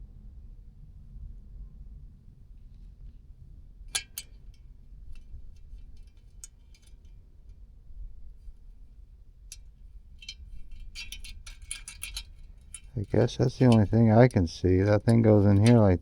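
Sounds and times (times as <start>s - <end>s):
small hard parts clicking: 10.2s - 16.0s.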